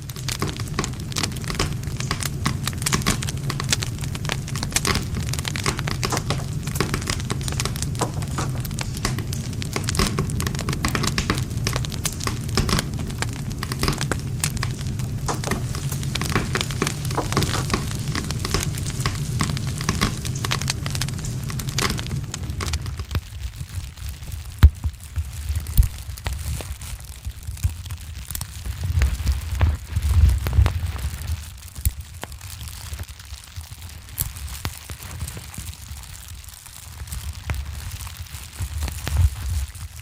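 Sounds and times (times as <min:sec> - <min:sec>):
steady low rumble: 0:00.0 - 0:25.0
campfire crackling and popping: 0:00.0 - 0:40.0.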